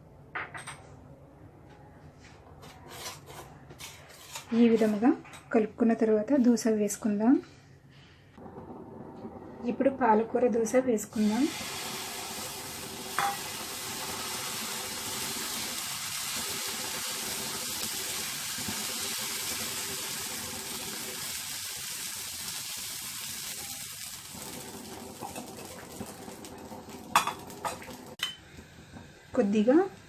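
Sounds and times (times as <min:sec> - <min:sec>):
batter sizzling on a hot pan: 0:11.2 - 0:28.4.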